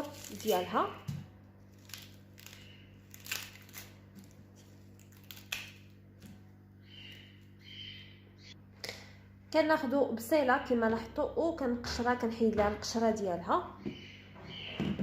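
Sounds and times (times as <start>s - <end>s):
onion skin crackling and tearing: 0.0s - 6.3s.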